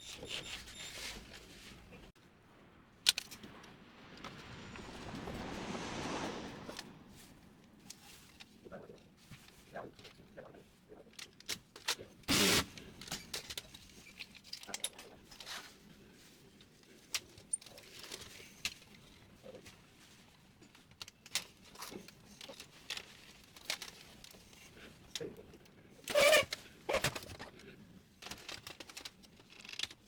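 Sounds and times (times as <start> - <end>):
loud scrape: 3.8 - 7.6.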